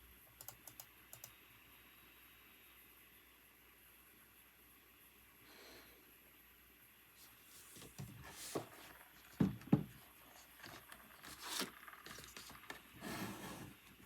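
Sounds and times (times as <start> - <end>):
soft rustling and brushing: 7.2 - 8.9.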